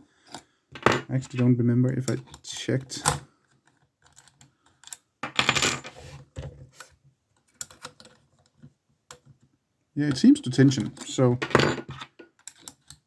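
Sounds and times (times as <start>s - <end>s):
metallic clicks and scraping in lock: 11.8s - 13.0s.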